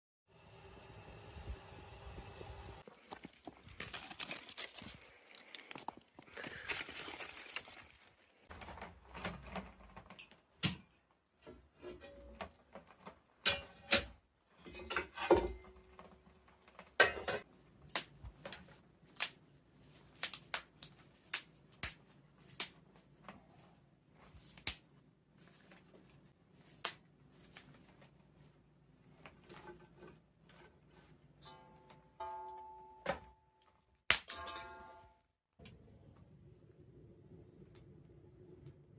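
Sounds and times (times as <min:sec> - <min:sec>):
twigs rustling: 0:02.8 - 0:08.5
snaps and knocks: 0:20.1 - 0:23.0, 0:26.7 - 0:27.7, 0:33.1 - 0:34.7.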